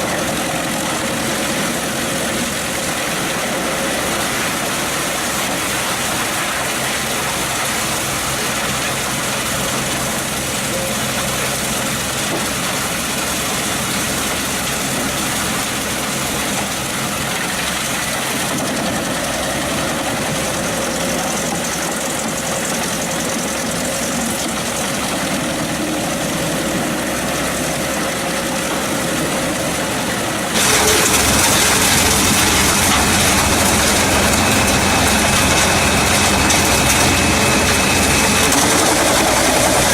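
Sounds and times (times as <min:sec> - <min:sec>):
wood chipper running: 0:00.0 - 0:39.9.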